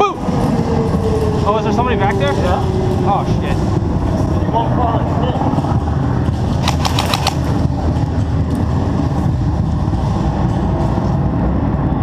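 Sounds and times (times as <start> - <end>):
wind rumble on microphone: 0.0 - 12.0
airsoft gun cracks: 6.6 - 7.5.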